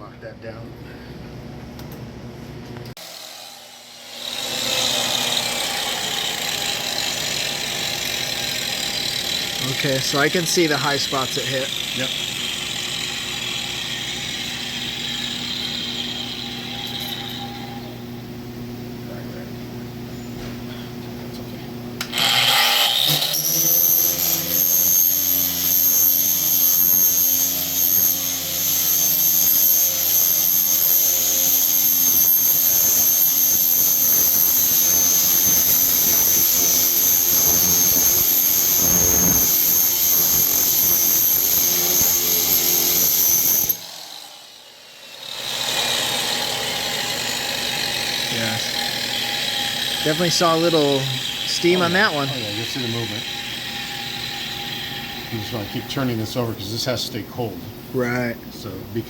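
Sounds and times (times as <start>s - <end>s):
grinder high whine: 3.0s - 20.8s, 22.0s - 57.2s.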